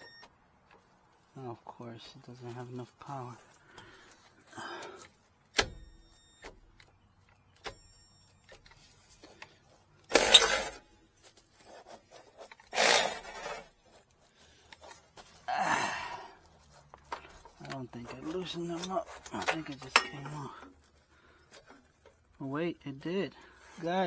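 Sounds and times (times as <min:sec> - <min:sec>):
ringing metal clank: 0:10.1 - 0:10.8, 0:19.8 - 0:20.4.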